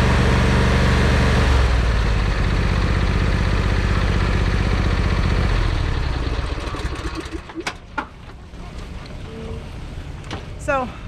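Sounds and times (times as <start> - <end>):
engine running at low revs: 0.0 - 7.6.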